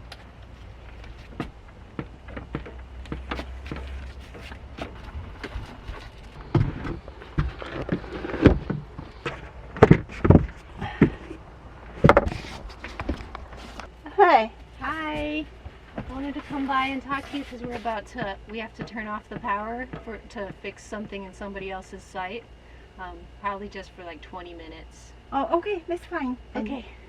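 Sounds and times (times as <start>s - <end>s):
bumps and thumps: 1.1s - 11.4s.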